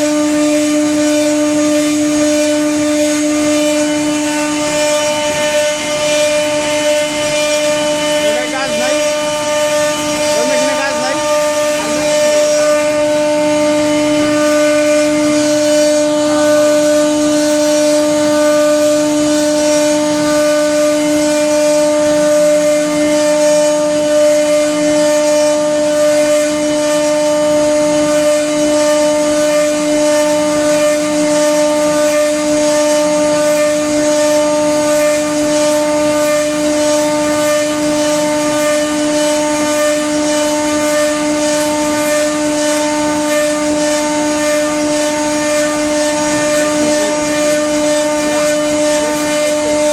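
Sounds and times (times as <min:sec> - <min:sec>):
cutting and air hiss: 0:00.0 - 0:49.9
router spindle whine: 0:00.0 - 0:49.9.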